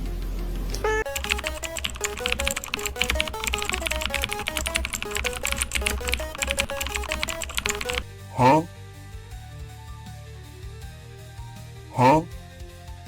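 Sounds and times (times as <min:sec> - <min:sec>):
fast music with quick melody: 0:00.0 - 0:13.0
dense rapid clicking: 0:00.7 - 0:08.1.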